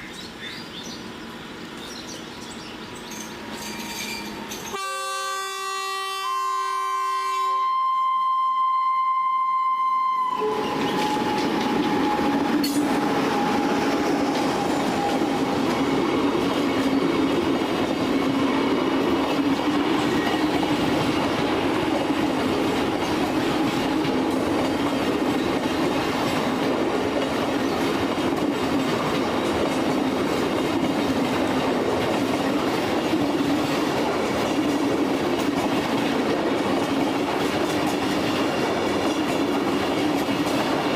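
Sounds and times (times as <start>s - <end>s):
train wheels clattering on rails: 1.8s - 4.8s, 10.5s - 40.9s
train horn: 4.7s - 15.6s.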